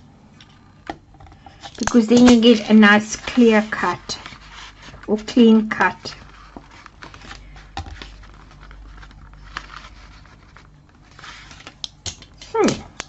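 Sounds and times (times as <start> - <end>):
paper rustling and scraping: 1.4 - 11.8.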